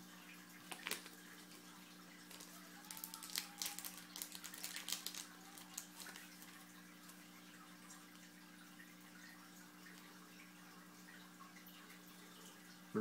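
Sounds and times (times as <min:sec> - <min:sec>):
low electrical hum: 0:00.0 - 0:13.0
foil wrapper crinkling: 0:00.6 - 0:07.2.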